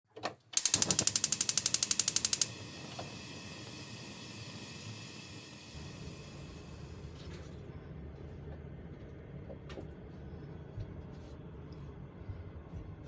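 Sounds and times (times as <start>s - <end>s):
gas igniter clicking rapidly: 0.6s - 6.0s
gas burner hissing: 0.6s - 7.5s.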